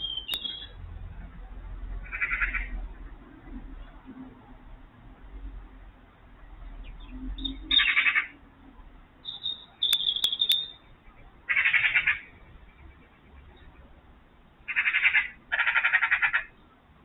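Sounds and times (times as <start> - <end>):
rattling animal calls: 2.0 - 2.8, 11.5 - 12.3, 14.7 - 16.5
thin steady high tone: 9.2 - 11.0
sharp clicks: 9.8 - 10.8.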